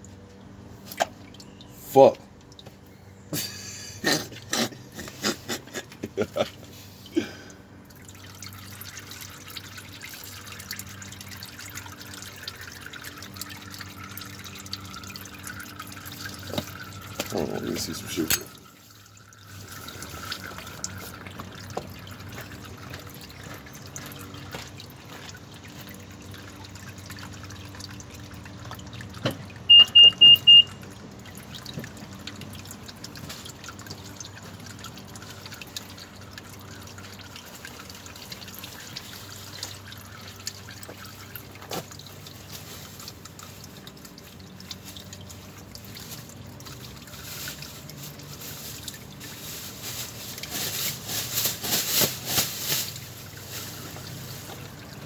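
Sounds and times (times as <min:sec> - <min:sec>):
fluid trickling and dripping: 0:00.0 - 0:55.0
high-pitched beeps: 0:29.7 - 0:30.8.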